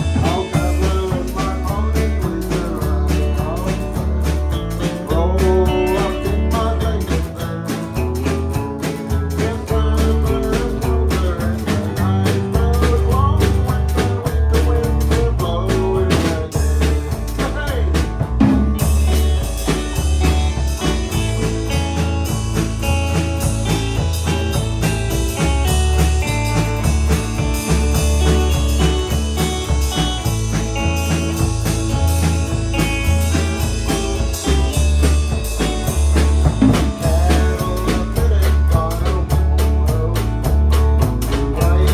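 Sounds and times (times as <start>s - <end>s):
band playing: 0.0s - 41.9s
guitar: 0.0s - 41.9s
pulsing bass line: 0.0s - 41.9s
steady drum beat: 0.0s - 41.9s.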